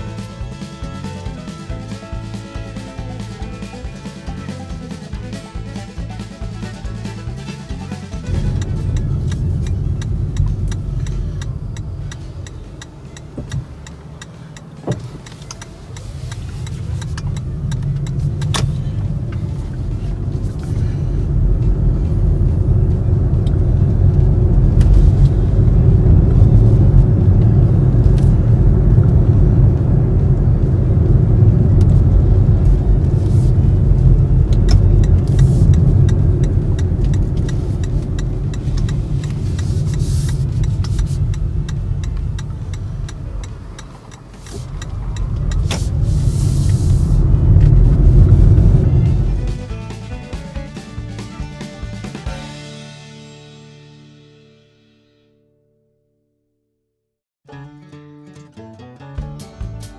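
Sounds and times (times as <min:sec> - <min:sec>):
loud low rumble: 0:00.0 - 0:12.4, 0:17.2 - 0:43.7, 0:44.6 - 0:50.2.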